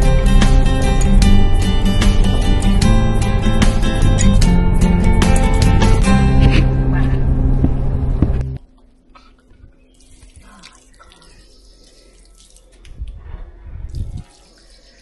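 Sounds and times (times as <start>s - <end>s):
background music: 0.0s - 8.6s.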